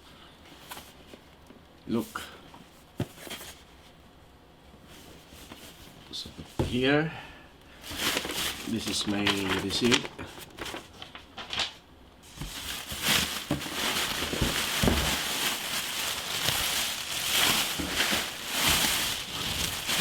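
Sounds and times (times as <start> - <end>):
packaging crinkling: 7.8 - 20.0.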